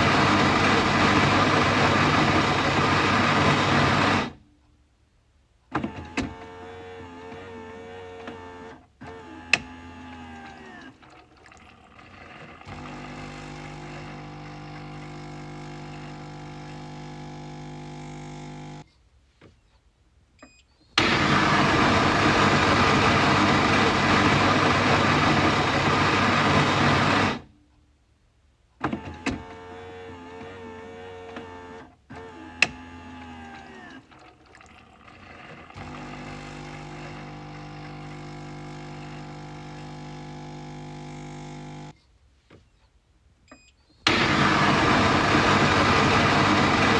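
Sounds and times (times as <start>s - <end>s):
coffee machine pump hum: 0.0s - 4.4s, 11.4s - 18.8s, 21.0s - 27.4s, 34.1s - 41.9s, 44.1s - 46.9s.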